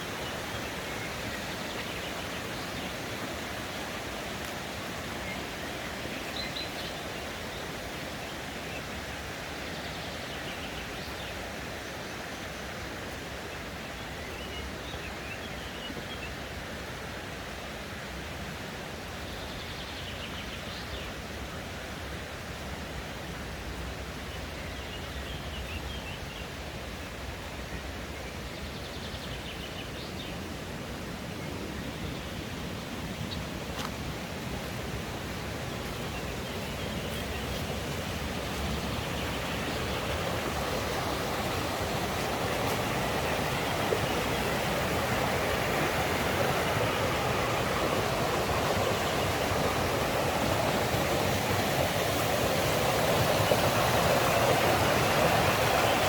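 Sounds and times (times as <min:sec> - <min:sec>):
stream rushing over rocks: 0:00.0 - 0:19.6, 0:29.7 - 0:56.0
small birds chirping faintly: 0:23.7 - 0:56.0.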